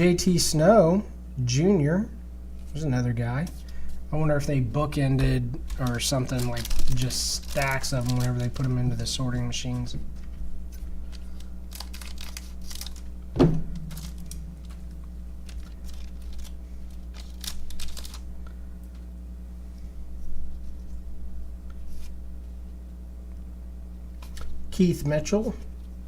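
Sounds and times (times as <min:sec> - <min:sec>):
cards crinkling and rustling: 0:04.9 - 0:13.2, 0:13.8 - 0:19.1, 0:24.2 - 0:24.6
sharp thump: 0:13.4 - 0:13.9.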